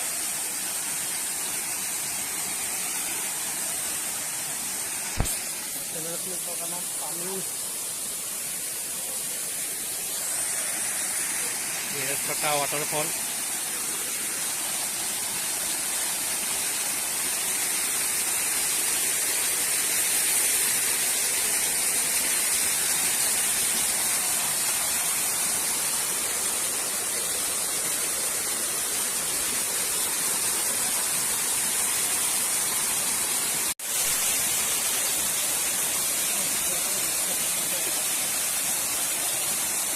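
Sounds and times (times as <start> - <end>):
small waterfall rushing: 0.0 - 39.9.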